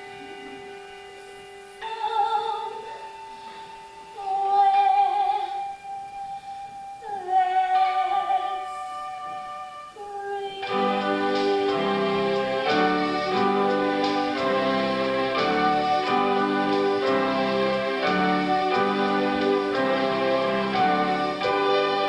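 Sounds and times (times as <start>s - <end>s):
woman singing with vibrato: 0.0s - 14.0s
sustained keyboard chords: 10.6s - 22.0s.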